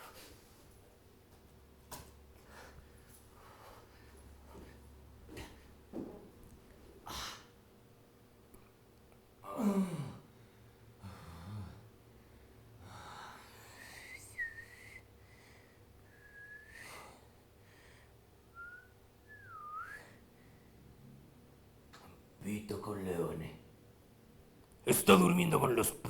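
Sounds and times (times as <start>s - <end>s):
breaths: 2.4s - 4.8s, 10.3s - 18.3s
man whistling sliding notes: 14.0s - 15.1s, 16.1s - 17.0s, 18.6s - 20.2s.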